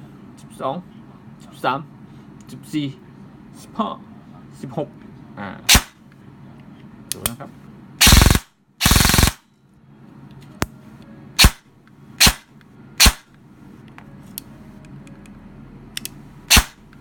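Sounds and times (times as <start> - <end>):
airsoft gun bursts: 5.7 - 5.9, 8.0 - 9.4, 12.2 - 12.4, 13.0 - 13.2, 16.5 - 16.8
airsoft gun single shots: 5.7 - 6.0, 8.0 - 9.4, 11.4 - 11.6, 12.2 - 13.3, 16.5 - 16.8.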